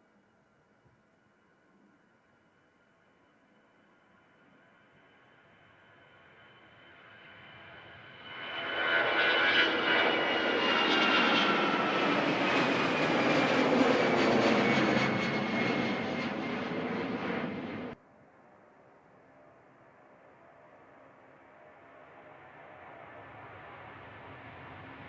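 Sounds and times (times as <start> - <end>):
airliner engines passing: 6.5 - 18.0, 21.6 - 25.0.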